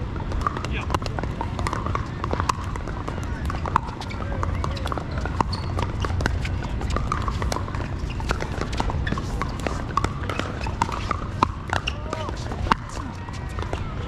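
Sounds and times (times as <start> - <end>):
paddles hitting plastic balls: 0.2 - 14.0.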